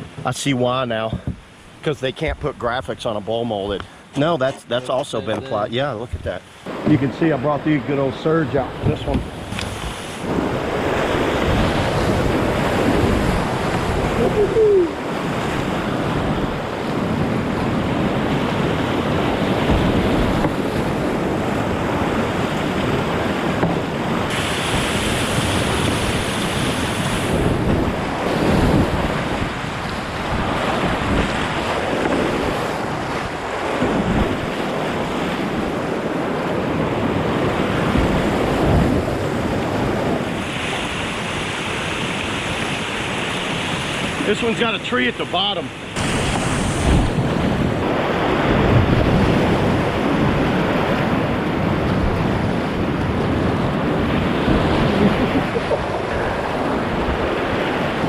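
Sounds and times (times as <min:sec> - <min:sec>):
wind gusting on microphone: 0:00.0 - 0:58.0
whitewater rushing: 0:03.2 - 0:58.0.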